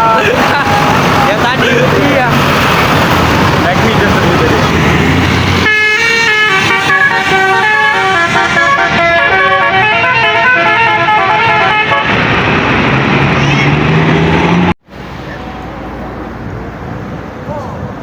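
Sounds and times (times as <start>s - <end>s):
loud noisy rumble: 0.0s - 17.2s
bus musical horn melody: 5.6s - 12.7s.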